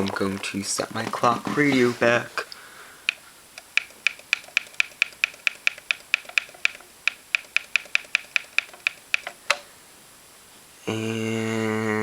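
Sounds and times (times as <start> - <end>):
clock radio button clicks: 3.1 - 9.7.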